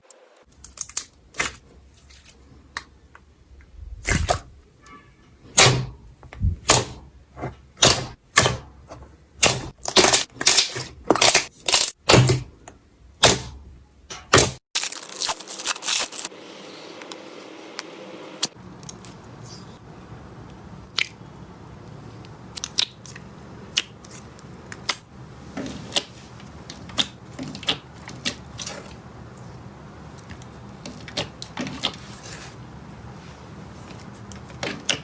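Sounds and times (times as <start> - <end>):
slime squelching and crackling: 14.7 - 16.3, 21.8 - 25.1, 25.7 - 32.6.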